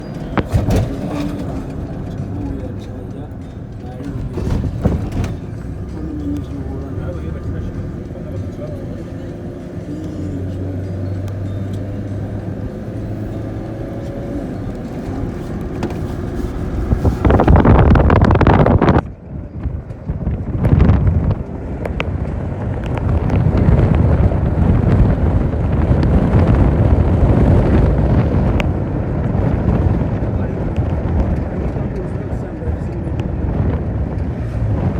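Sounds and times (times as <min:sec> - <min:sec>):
vehicle engine and road rumble: 0:00.0 - 0:34.9
wind noise rushing: 0:12.5 - 0:34.9.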